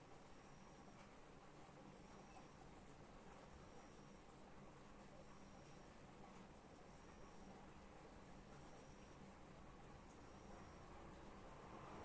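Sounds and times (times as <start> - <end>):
faint background hiss: 0.0 - 12.0.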